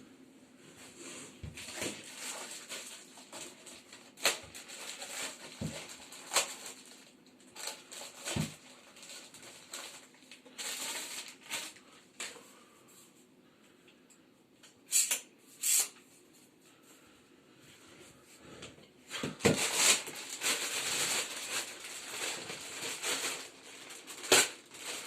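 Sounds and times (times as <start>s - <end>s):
packaging rustling: 1.5s - 11.8s, 19.2s - 25.0s.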